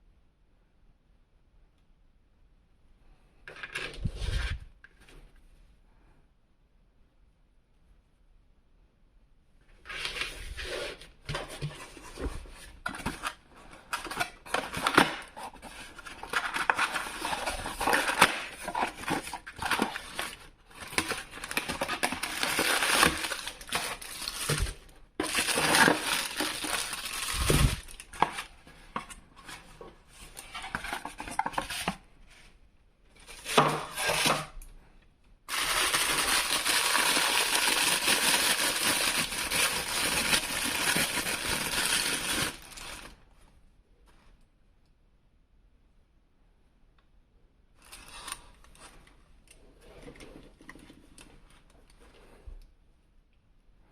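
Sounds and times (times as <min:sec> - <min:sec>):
packaging rustling and crinkling: 0:09.8 - 0:32.4, 0:35.5 - 0:43.2.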